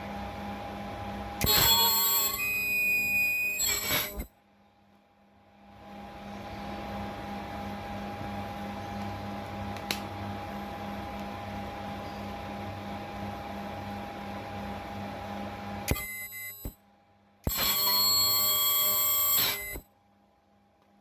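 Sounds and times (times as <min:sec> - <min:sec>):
ultrasonic welder hiss and whine: 0:01.3 - 0:04.3, 0:17.4 - 0:19.8.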